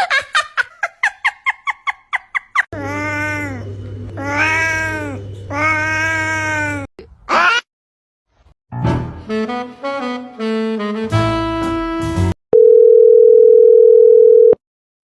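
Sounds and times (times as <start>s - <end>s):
saxophone-like melody: 9.2s - 12.4s.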